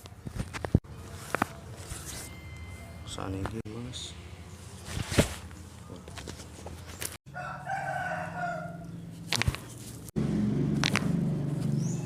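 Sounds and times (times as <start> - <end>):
rooster crowing: 7.3 - 9.0.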